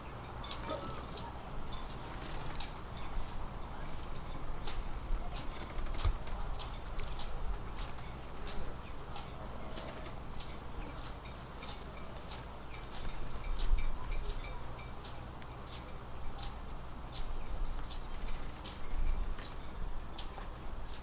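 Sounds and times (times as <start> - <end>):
winch ratcheting clicks: 0.4 - 3.4, 5.4 - 8.6.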